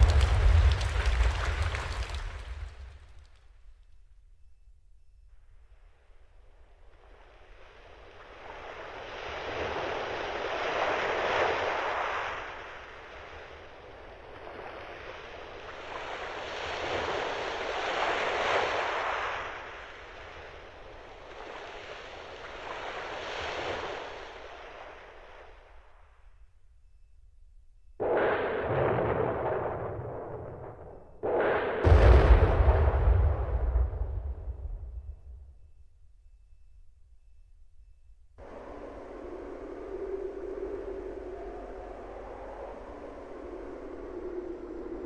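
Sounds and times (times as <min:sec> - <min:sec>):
synthesized ocean waves: 0:05.6 - 0:27.1, 0:38.4 - 0:45.0.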